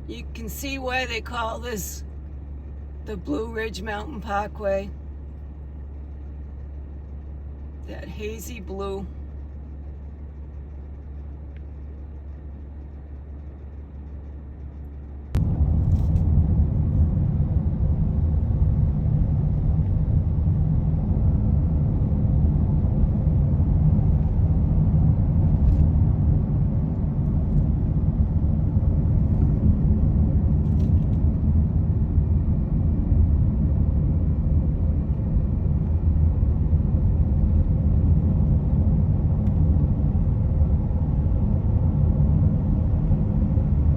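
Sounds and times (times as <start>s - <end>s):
engine and road hum in vehicle: 0.0s - 43.9s
loud engine and tyre rumble: 0.0s - 43.9s.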